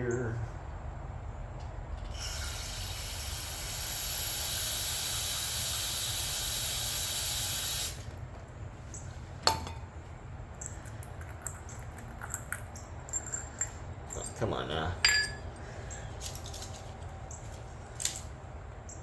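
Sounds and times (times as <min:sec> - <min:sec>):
pressurised spray hissing: 0:02.2 - 0:08.1.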